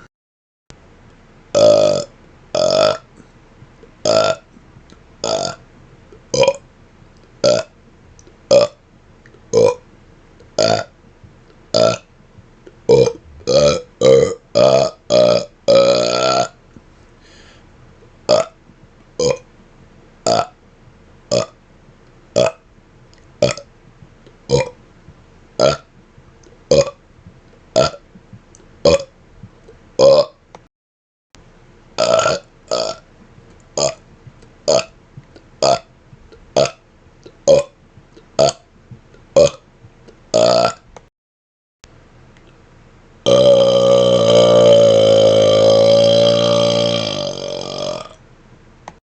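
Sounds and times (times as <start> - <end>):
man burping: 1.5 - 3.0, 4.0 - 4.5, 5.2 - 5.6, 6.3 - 6.6, 7.4 - 7.7, 9.5 - 9.8, 10.6 - 10.9, 12.9 - 16.6, 18.3 - 18.6, 19.2 - 19.4, 25.6 - 25.9, 26.7 - 27.0, 28.8 - 29.1, 30.0 - 30.4, 32.0 - 33.0, 37.5 - 37.7, 39.4 - 39.6, 40.3 - 40.8, 43.3 - 48.2.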